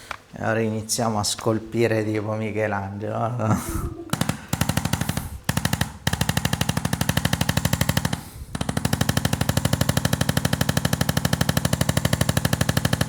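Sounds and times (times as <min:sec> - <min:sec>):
massage gun hammering: 0:04.0 - 0:13.0.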